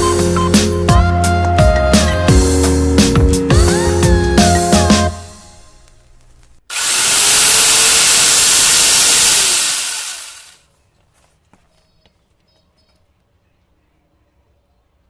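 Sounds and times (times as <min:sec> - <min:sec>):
angle grinder running: 0:06.7 - 0:10.6.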